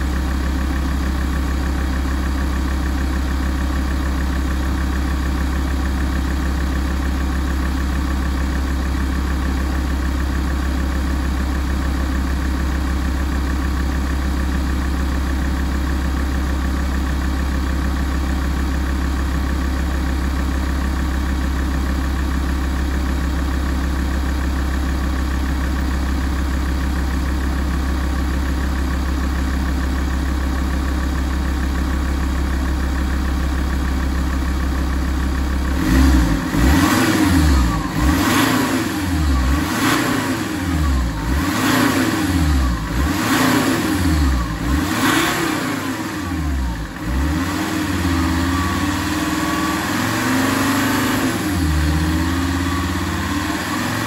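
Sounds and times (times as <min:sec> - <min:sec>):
diesel car engine idling and revving: 0:00.0 - 0:54.0.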